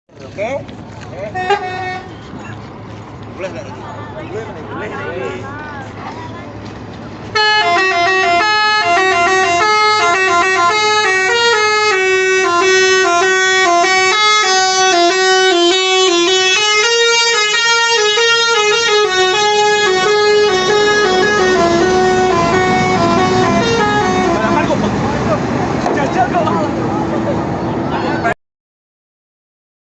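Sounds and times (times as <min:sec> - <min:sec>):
musical bus horn tune: 0:01.3 - 0:02.4, 0:07.3 - 0:24.9.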